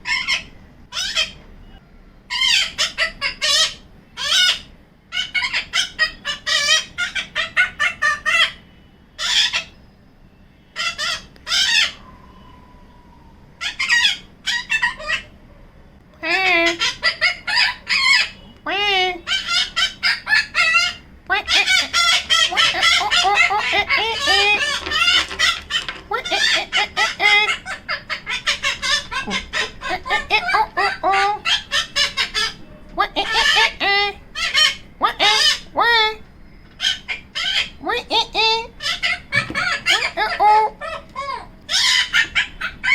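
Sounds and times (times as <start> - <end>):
macaw warbling chatter: 16.2 - 42.9.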